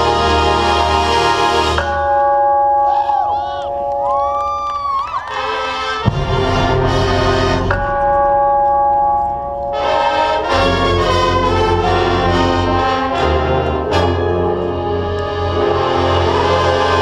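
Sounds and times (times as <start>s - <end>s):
drum and bugle corps playing: 4.8s - 17.0s.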